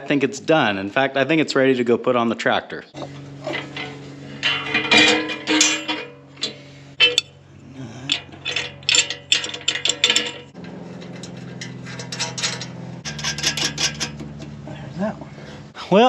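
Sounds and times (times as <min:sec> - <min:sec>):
low mechanical hum: 0:02.6 - 0:16.0
mechanical clicks and knocks: 0:08.1 - 0:14.6.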